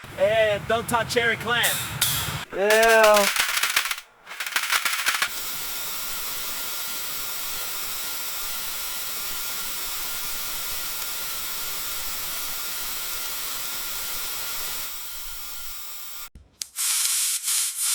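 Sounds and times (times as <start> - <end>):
dental chair airy hiss: 4.3 - 17.9.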